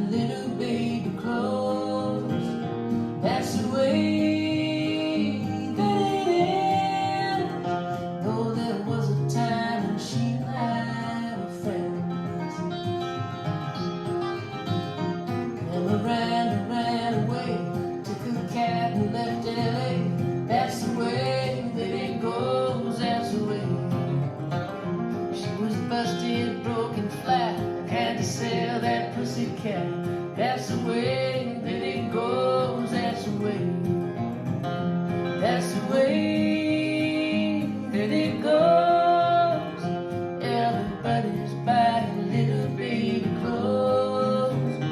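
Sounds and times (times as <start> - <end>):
person singing: 0.0 - 12.6, 15.5 - 24.3, 25.3 - 34.0, 35.4 - 44.9
plucked guitar: 0.0 - 44.9.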